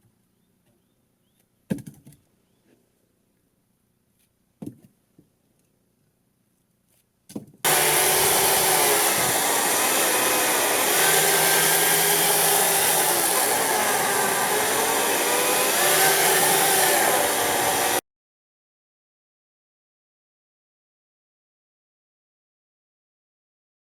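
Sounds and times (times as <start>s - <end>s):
chainsaw cutting wood: 7.7s - 18.0s.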